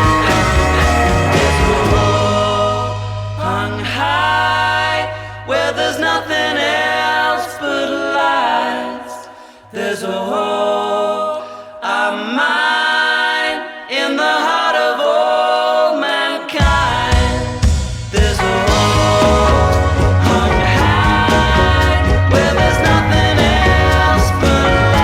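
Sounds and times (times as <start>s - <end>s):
drums and bass: 0.0s - 5.7s, 16.6s - 25.0s
sustained low bass note: 0.0s - 5.8s
wordless vocal harmonies: 0.0s - 25.0s.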